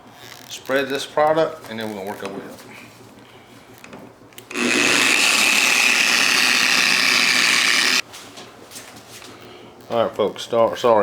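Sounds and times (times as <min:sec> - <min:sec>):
machine polisher whirring: 0:04.5 - 0:08.0
polishing pad rubbing: 0:04.5 - 0:08.0.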